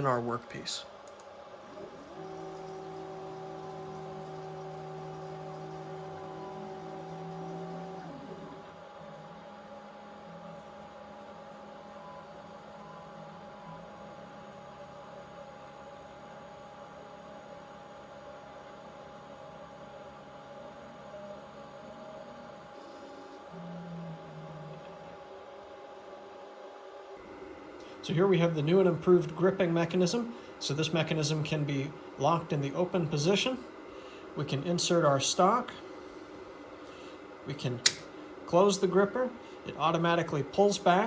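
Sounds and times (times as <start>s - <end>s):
faint electrical hum: 0.0s - 41.0s
robot drive motors whining: 1.7s - 9.4s.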